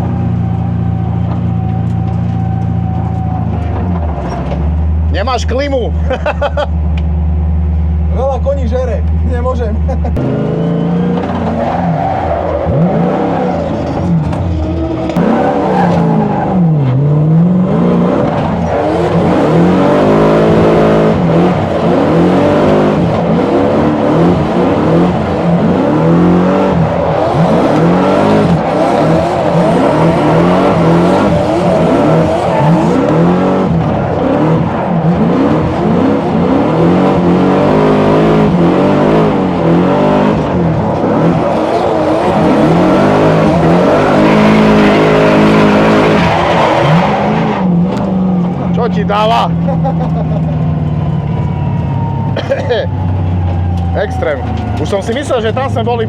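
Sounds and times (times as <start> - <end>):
car engine revving hard: 10.0 - 50.3
tyres squealing and skidding: 10.2 - 56.0.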